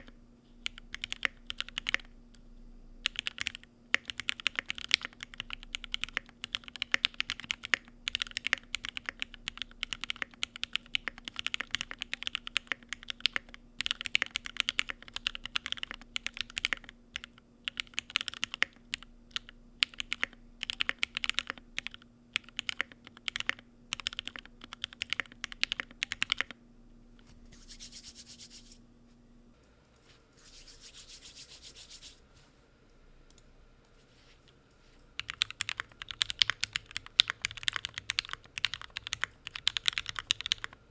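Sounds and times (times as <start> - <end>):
mechanical keyboard typing: 0.0 - 2.1, 3.0 - 26.6, 35.2 - 40.8.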